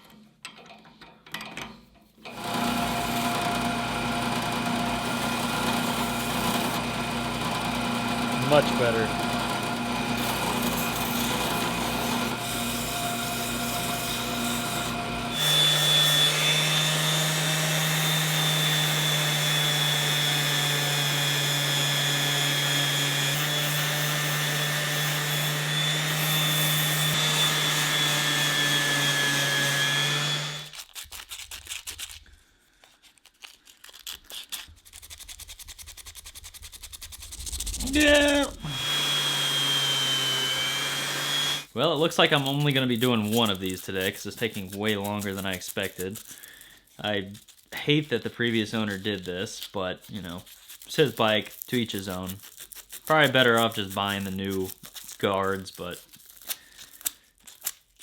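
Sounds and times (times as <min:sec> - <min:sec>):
drill press sanding metal: 0:02.3 - 0:30.8, 0:37.8 - 0:45.0.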